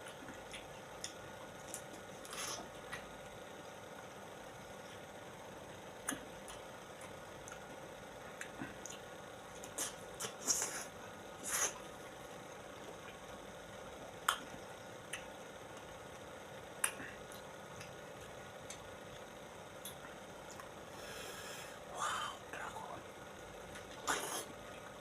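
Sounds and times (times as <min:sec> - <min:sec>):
person chewing soft fruit: 0:00.0 - 0:03.4, 0:04.2 - 0:25.0
mouth clicks and smacks: 0:14.2 - 0:15.9, 0:16.8 - 0:18.0.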